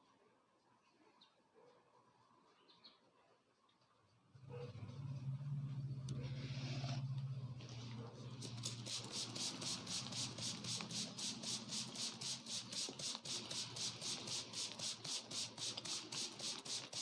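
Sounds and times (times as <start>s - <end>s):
hands rubbing hair: 8.4s - 17.0s.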